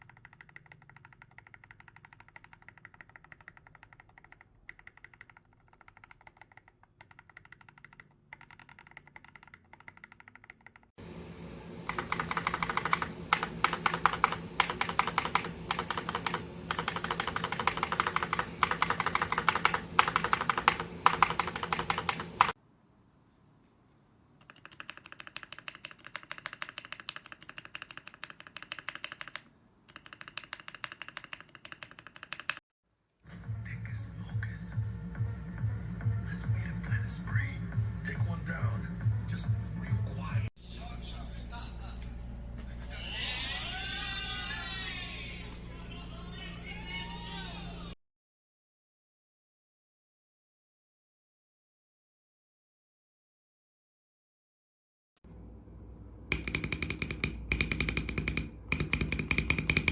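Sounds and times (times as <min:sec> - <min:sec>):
mechanical keyboard typing: 0:00.0 - 0:10.9, 0:11.9 - 0:22.6, 0:24.4 - 0:32.6, 0:56.3 - 0:59.9.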